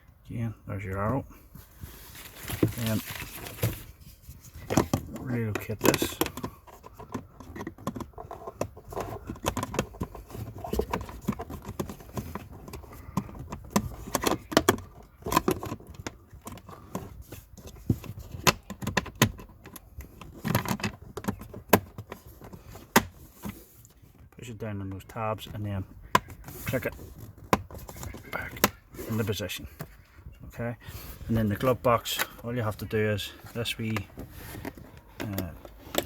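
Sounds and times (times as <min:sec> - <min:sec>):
plastic cover clicking and rattling: 0:04.6 - 0:24.4, 0:25.9 - 0:28.9, 0:33.7 - 0:36.0.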